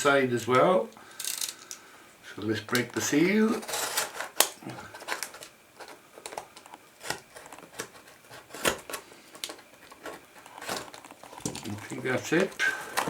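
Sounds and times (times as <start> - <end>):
box being opened: 3.5 - 13.0.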